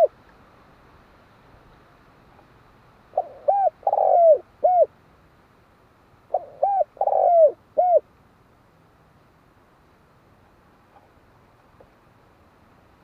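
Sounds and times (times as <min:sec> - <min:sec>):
dove cooing: 0:03.1 - 0:04.9, 0:06.3 - 0:08.0.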